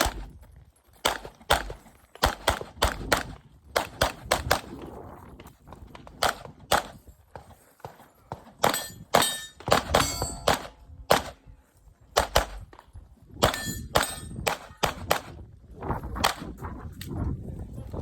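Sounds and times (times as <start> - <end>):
steel targets ringing: 8.6 - 10.6, 13.5 - 14.4
handgun shots: 8.6 - 11.4, 12.2 - 12.6, 13.4 - 15.4.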